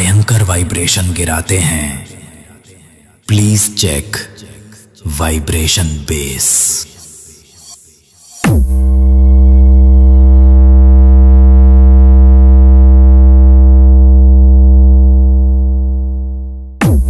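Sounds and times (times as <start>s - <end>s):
deep synthesized sub-bass tone: 8.4s - 17.0s.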